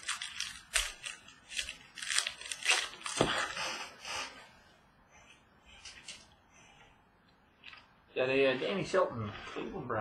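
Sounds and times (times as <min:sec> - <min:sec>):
foil wrappers crinkling and tearing: 0:00.0 - 0:03.6.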